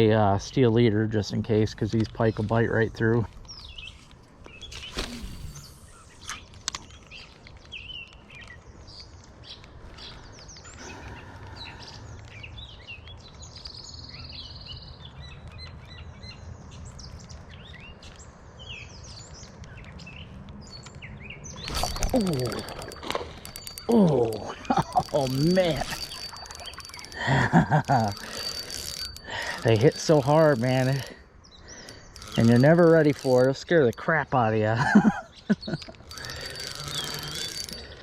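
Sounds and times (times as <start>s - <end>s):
songbirds chirping: 0.0s - 38.0s
sharp clicks: 21.6s - 38.0s.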